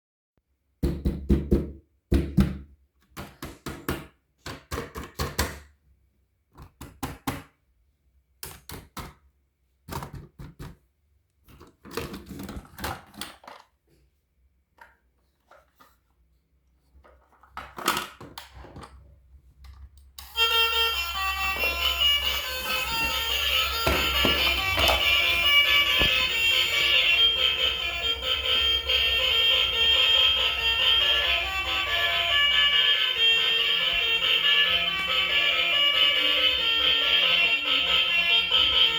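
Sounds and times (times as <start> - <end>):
music with sustained notes: 20.3 - 38.9.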